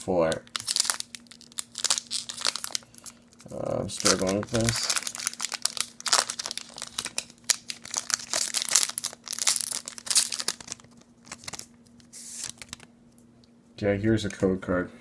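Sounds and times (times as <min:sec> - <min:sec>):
foil wrapper crinkling and tearing: 0:00.0 - 0:12.9.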